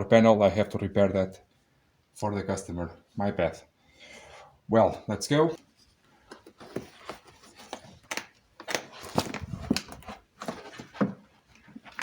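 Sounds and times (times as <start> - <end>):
rustling: 5.6 - 12.0.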